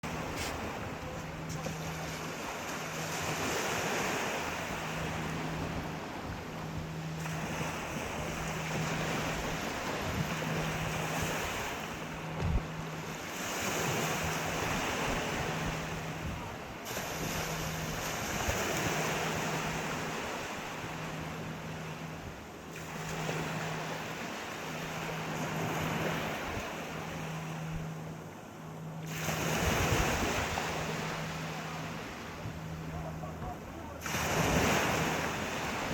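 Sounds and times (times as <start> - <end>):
low pulsing hum: 0.0 - 35.9
sea waves washing onto shore: 0.0 - 35.9
short thud: 12.4 - 12.6.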